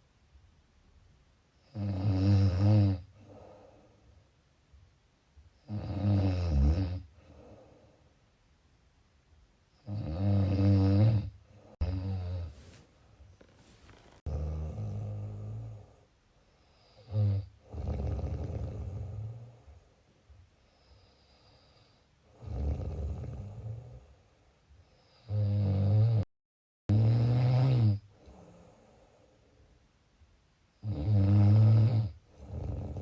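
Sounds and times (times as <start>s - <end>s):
person snoring loudly: 5.7s - 7.1s, 9.8s - 12.5s, 14.3s - 15.9s, 17.0s - 19.4s, 22.3s - 24.0s, 25.2s - 26.3s, 26.9s - 28.1s, 30.8s - 33.0s.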